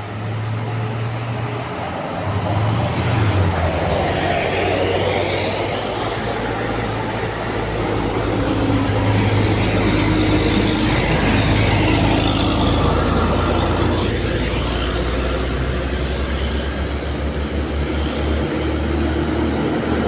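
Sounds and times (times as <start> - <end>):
bus engine droning: 0.0 - 20.0
road noise: 0.0 - 20.0.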